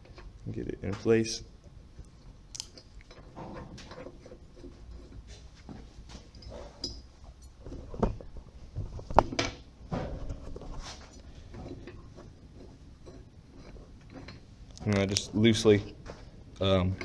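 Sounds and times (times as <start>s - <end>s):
metal parts clicking and knocking: 2.5s - 5.3s, 11.2s - 15.8s.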